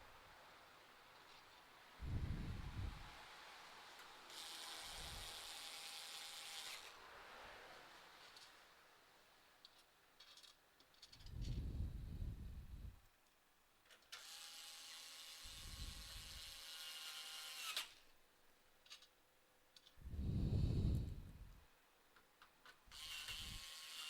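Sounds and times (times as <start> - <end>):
electric screwdriver whirring: 14.2 - 18.0, 22.9 - 24.0
low rumble: 20.0 - 21.6.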